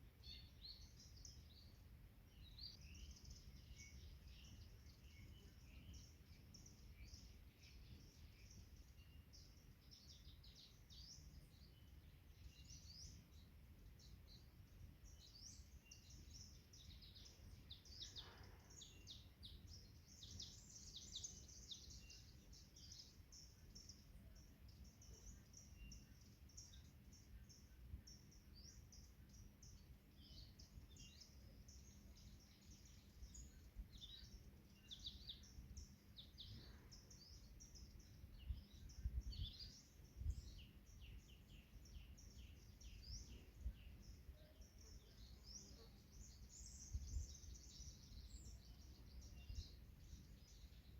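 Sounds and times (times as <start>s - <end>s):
birds chirping and trilling: 0.1s - 50.9s.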